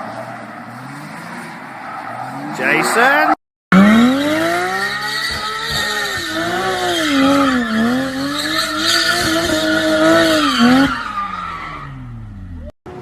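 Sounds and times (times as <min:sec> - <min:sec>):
car engine revving: 0:00.7 - 0:11.0.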